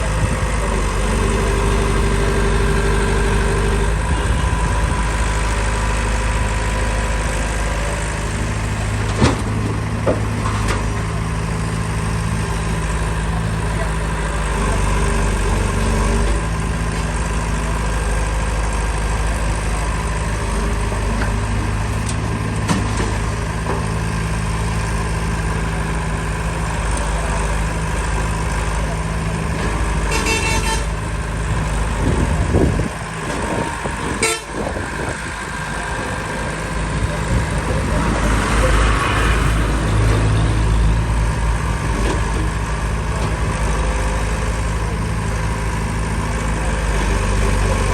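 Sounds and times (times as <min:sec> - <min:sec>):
heavy vehicle engine running: 0:00.0 - 0:47.9
vehicle horn: 0:30.1 - 0:31.0, 0:34.1 - 0:34.7.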